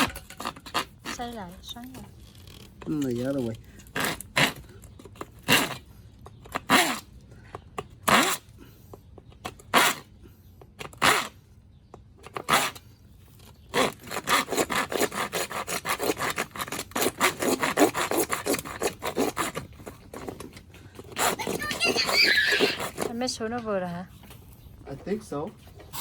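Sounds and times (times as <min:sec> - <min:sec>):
hand tool scraping wood: 0:13.6 - 0:23.7.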